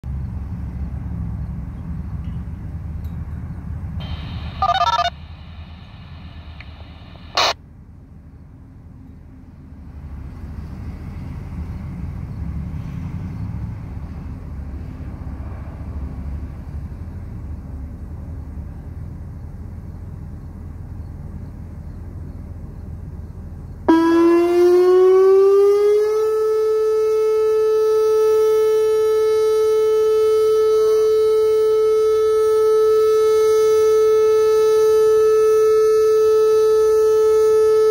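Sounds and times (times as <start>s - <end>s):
radio scanner tone: 4.0s - 7.6s
tornado warning siren: 4.0s - 7.6s, 23.9s - 37.9s.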